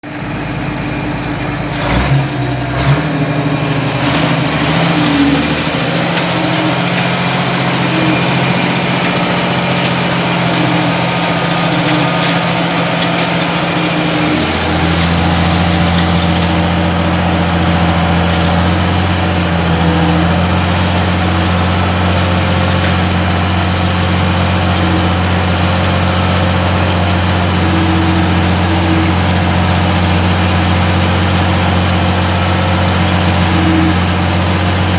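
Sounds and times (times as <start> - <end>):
tractor diesel engine running: 0.0 - 34.9.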